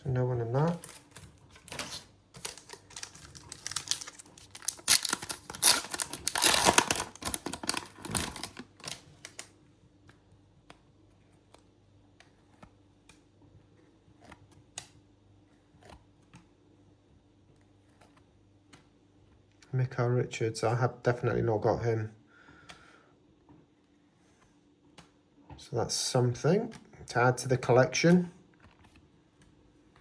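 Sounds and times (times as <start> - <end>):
wrapper tearing and crinkling: 0.7 - 9.5.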